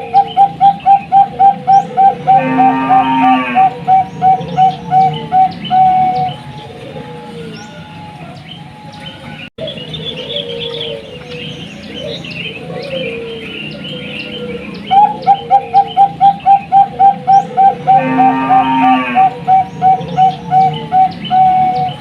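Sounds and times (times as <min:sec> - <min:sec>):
small birds chirping: 0:00.0 - 0:02.7, 0:03.3 - 0:22.0
doves cooing: 0:00.0 - 0:22.0.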